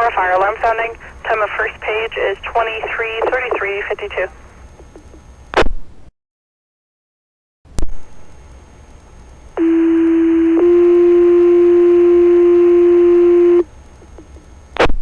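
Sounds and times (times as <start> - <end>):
faint radio hiss: 0.0 - 5.3, 7.9 - 14.8
two-tone paging tones: 9.6 - 13.6.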